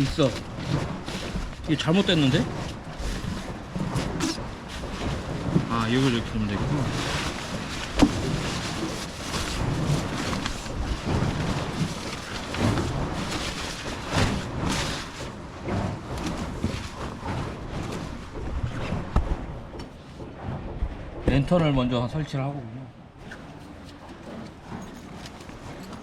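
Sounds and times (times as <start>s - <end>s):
rustling and handling noise: 0.0s - 15.4s, 23.3s - 26.0s.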